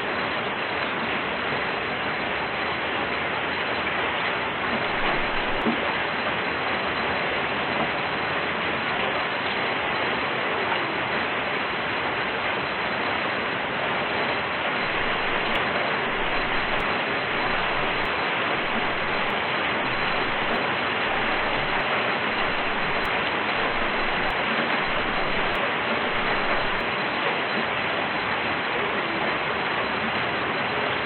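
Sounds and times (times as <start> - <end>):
steady rain falling: 0.0 - 31.0.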